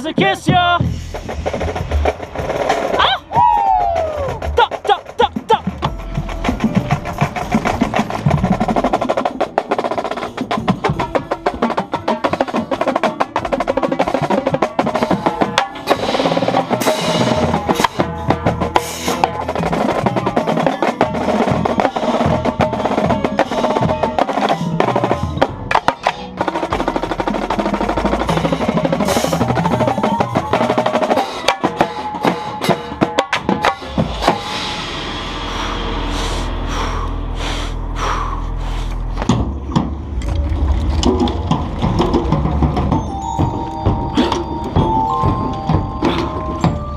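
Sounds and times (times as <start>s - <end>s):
rapid tenor drum strokes: 4.3s - 46.6s
sustained pitched ensemble notes: 4.4s - 46.9s
crashing cymbal accents: 33.6s - 38.7s.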